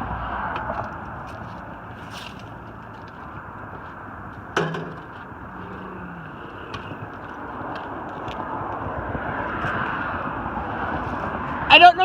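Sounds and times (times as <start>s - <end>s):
outdoor background noise: 0.0s - 12.0s
sharp knock: 4.6s - 5.0s.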